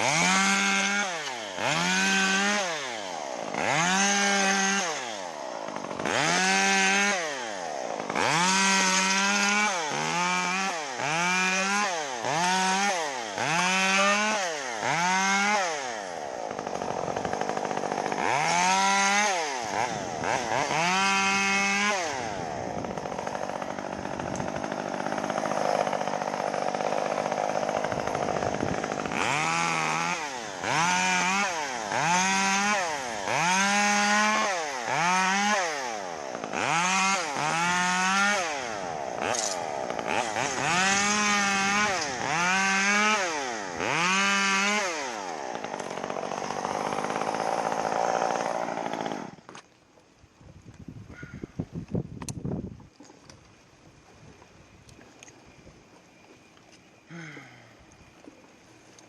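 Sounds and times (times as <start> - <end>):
chainsaw revving: 0.0 - 49.5, 57.1 - 57.6.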